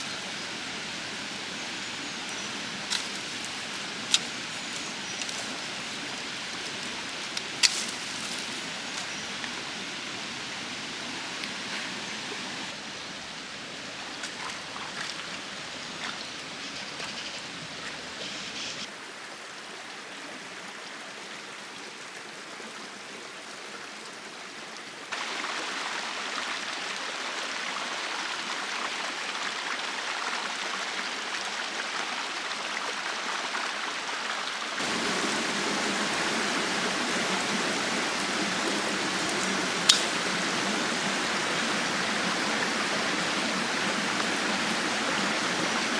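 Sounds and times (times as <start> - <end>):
stream water rushing: 0.0 - 45.9.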